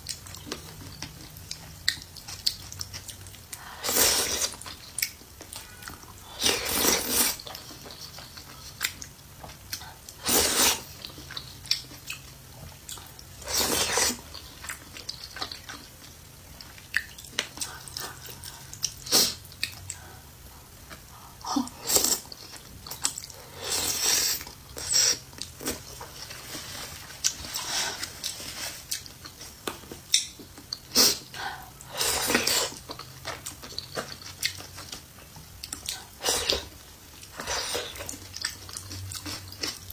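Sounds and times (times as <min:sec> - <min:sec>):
wet chewing: 0:00.0 - 0:20.2.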